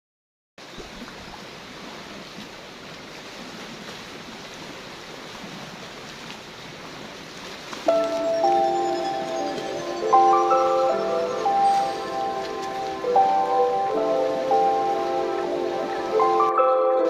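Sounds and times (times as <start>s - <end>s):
sea waves washing on shore: 0.6s - 17.0s
music with chime-like mallet tones: 7.9s - 17.0s.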